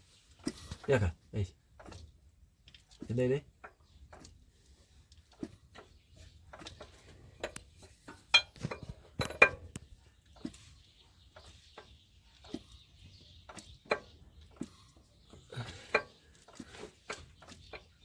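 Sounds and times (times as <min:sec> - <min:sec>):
metal tools clinking: 0:07.4 - 0:09.8.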